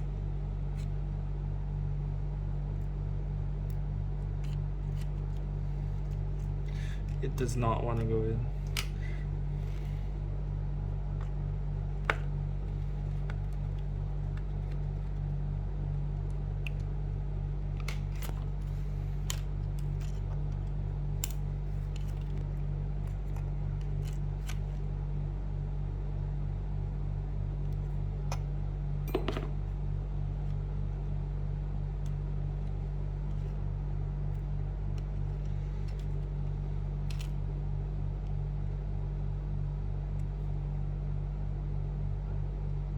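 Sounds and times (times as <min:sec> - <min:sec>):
steady low hum: 0:00.0 - 0:42.9.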